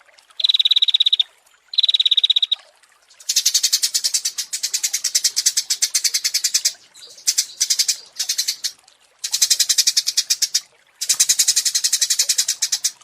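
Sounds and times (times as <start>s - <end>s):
songbird rattling trill: 1.8s - 2.6s, 3.2s - 13.0s.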